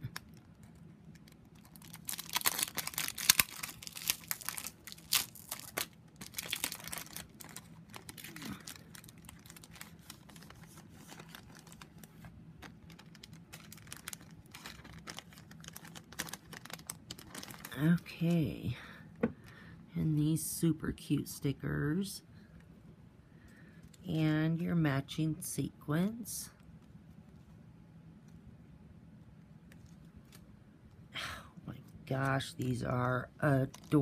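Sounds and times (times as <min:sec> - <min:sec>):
packaging crinkling and rustling: 0:00.0 - 0:18.1, 0:33.3 - 0:34.0.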